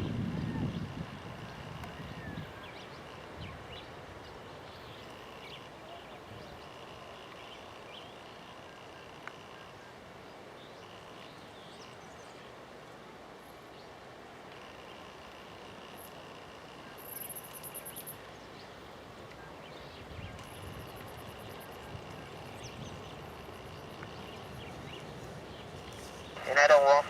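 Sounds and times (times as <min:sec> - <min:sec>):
insects trilling: 0:14.5 - 0:18.3, 0:20.4 - 0:27.0.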